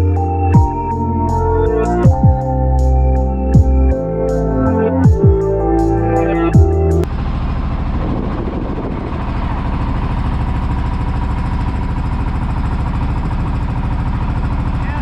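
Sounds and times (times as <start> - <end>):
boat engine running: 6.6 - 15.0.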